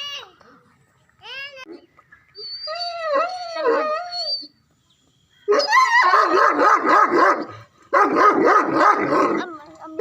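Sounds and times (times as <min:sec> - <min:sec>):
dog yelping barks: 0:05.5 - 0:09.5.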